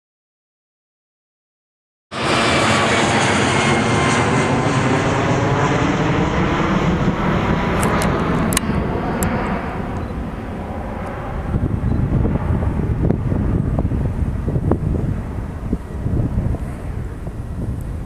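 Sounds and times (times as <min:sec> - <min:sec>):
jet engines of passing aircraft: 0:02.1 - 0:18.0
sharp clicks: 0:07.8 - 0:09.3.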